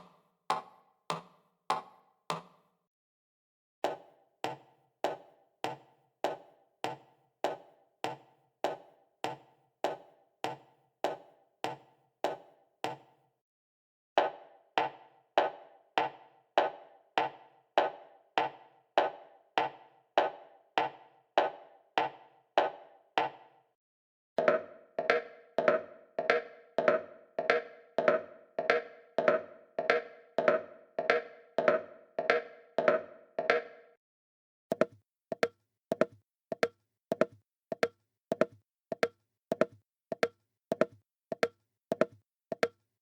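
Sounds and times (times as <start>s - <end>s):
footsteps of hard-soled shoes: 3.9s - 13.1s.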